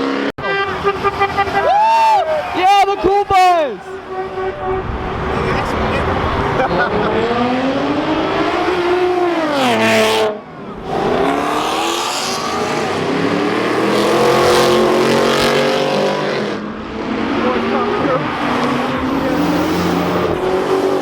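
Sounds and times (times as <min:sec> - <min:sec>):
car engine revving: 0:04.8 - 0:21.0.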